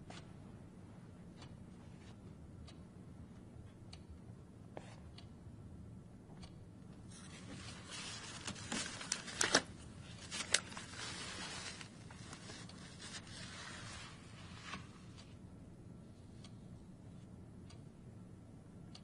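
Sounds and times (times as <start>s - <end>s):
rustling handling noises: 7.1s - 15.2s.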